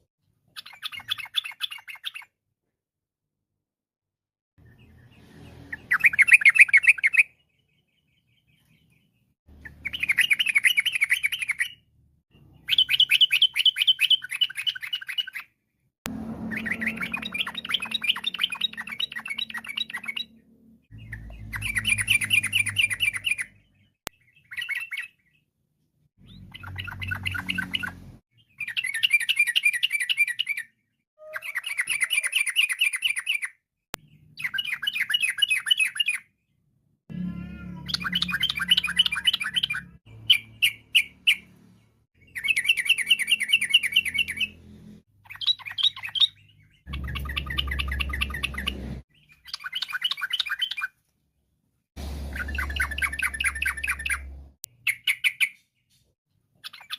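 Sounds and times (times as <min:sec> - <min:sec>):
bird singing chattering song: 0:00.5 - 0:02.4, 0:04.6 - 0:15.6, 0:16.4 - 0:25.5, 0:26.2 - 0:36.3, 0:37.6 - 0:44.6, 0:45.2 - 0:51.0, 0:52.3 - 0:56.9
sharp bird notes: 0:16.1 - 0:25.2, 0:37.1 - 0:41.5, 0:45.3 - 0:50.9, 0:52.1 - 0:55.6.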